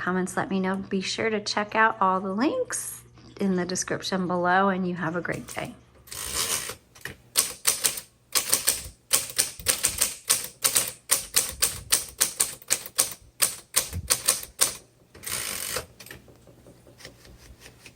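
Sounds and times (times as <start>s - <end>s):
typewriter carriage rasping sweep: 5.4s - 6.8s, 7.4s - 16.2s
manual typewriter typing: 5.4s - 17.9s.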